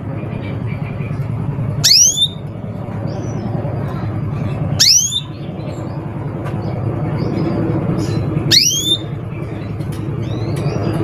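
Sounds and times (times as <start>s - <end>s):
low rumble: 0.0s - 11.0s
canary call: 1.8s - 2.4s, 4.8s - 5.4s, 8.5s - 9.1s.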